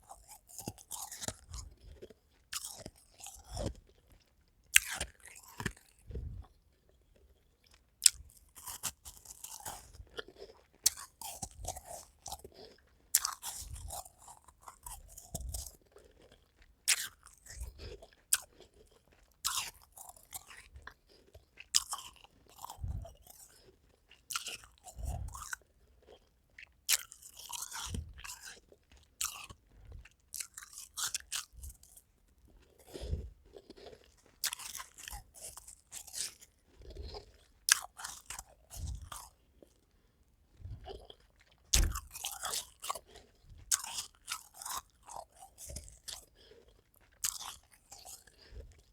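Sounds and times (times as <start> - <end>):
crunching and chewing ice: 0.0 - 48.9.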